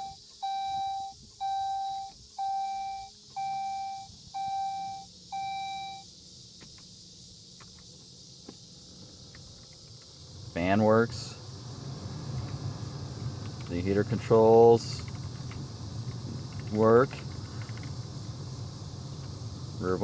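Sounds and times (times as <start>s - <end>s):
dashboard warning chime beeping: 0.0s - 6.1s.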